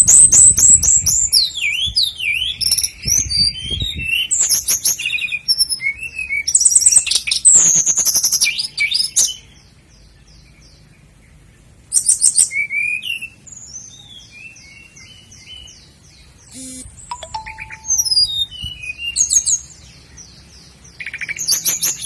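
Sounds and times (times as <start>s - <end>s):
flycatcher singing rattling notes: 16.4s - 19.4s.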